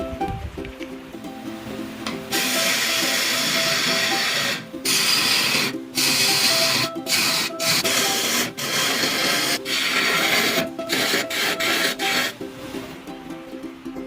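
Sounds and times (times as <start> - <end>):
background music: 0.0 - 14.0
woodturning lathe whirring: 2.3 - 12.4.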